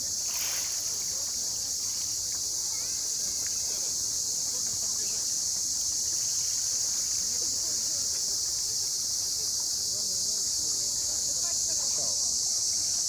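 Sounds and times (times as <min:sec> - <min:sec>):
insects shrilling: 0:00.0 - 0:08.1
faint distant voices: 0:00.0 - 0:13.0.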